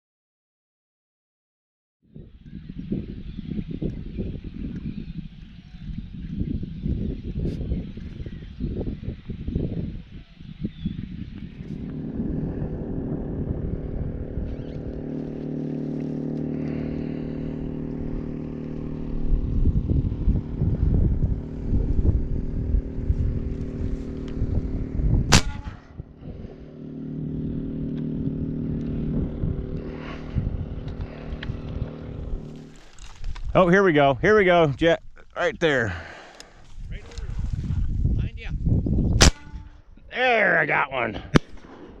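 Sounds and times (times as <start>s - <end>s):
low rumbling: 2.2s - 40.1s
motor humming: 10.6s - 33.5s
sharp crack: 25.3s - 26.0s, 39.2s - 39.7s, 41.3s - 42.0s.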